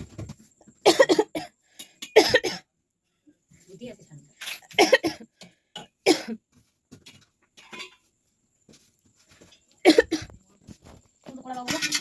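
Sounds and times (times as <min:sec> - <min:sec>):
person coughing: 0:00.9 - 0:01.5, 0:02.2 - 0:02.7, 0:04.7 - 0:05.3, 0:06.0 - 0:06.4, 0:09.8 - 0:10.4.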